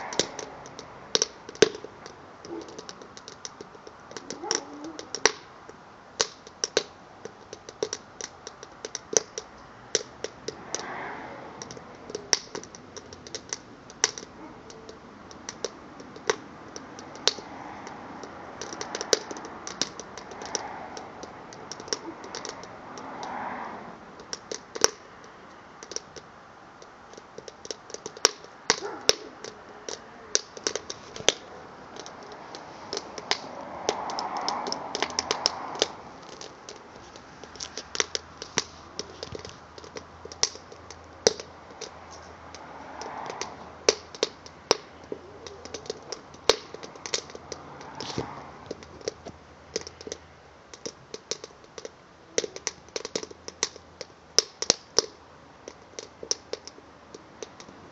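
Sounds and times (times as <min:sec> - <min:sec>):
burning log crackling and popping: 0:00.0 - 0:57.9.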